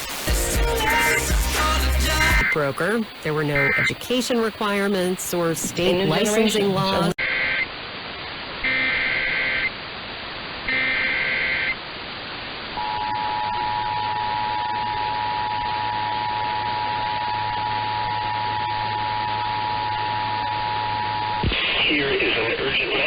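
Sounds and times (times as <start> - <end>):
two-tone attention signal: 2.1 - 2.7.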